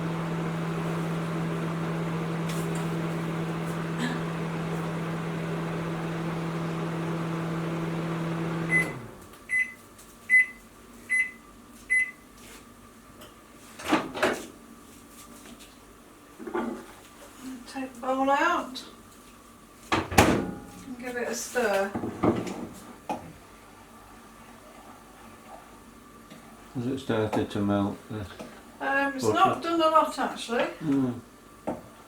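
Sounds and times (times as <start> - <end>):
microwave humming: 0.0 - 9.7
high microwave beeps: 8.6 - 12.3.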